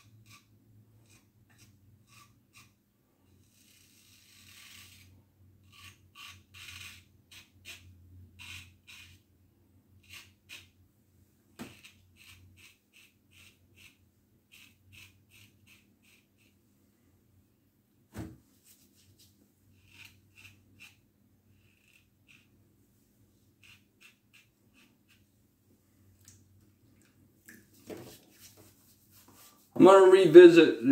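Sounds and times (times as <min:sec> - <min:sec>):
razor scraping stubble: 0:11.7 - 0:16.5, 0:18.6 - 0:21.0, 0:21.6 - 0:22.5, 0:23.6 - 0:25.2.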